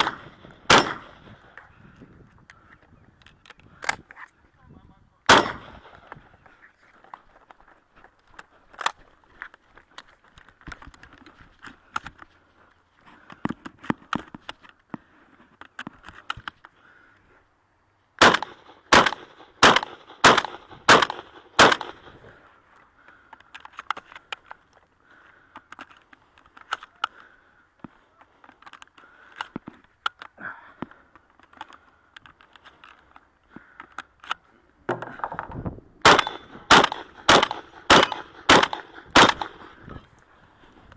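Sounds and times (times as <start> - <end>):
shotgun shots: 0.0 - 1.4, 5.3 - 6.0, 18.2 - 22.2, 36.0 - 39.8.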